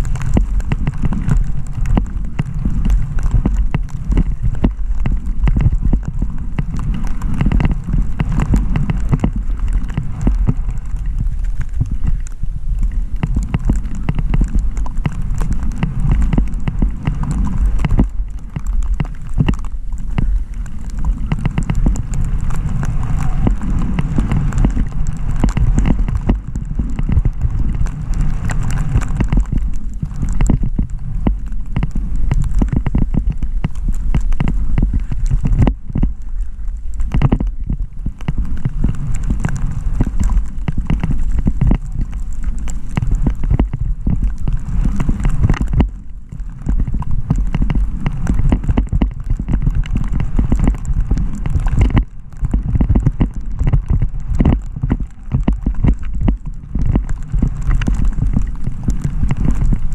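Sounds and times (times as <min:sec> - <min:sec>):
skis scraping over rocky snow: 0:00.0 - 0:59.9
wind rumbling on microphone: 0:00.0 - 0:59.9
sharp clicks and knocks: 0:37.0 - 0:38.4.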